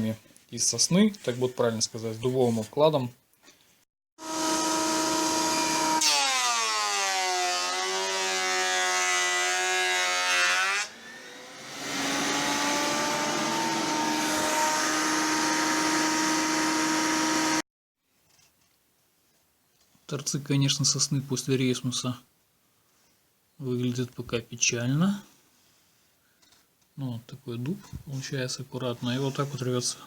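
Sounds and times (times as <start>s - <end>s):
thickness planer cutting wood: 4.2s - 17.6s.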